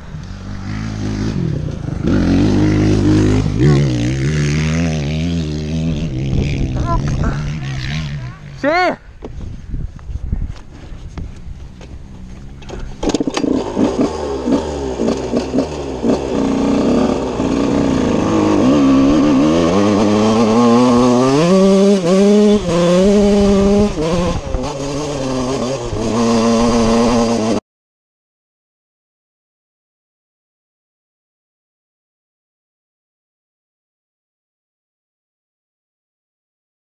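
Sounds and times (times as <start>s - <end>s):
motocross engine revving: 0.1s - 8.9s, 12.6s - 27.6s.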